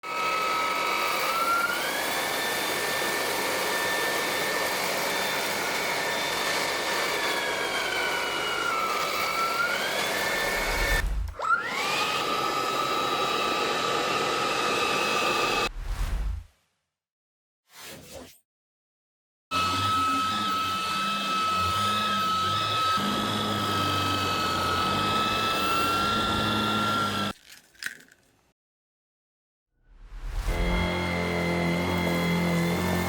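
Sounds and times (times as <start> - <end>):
vacuum cleaner motor whine: 0.0 - 15.7, 19.6 - 27.3, 30.5 - 33.0.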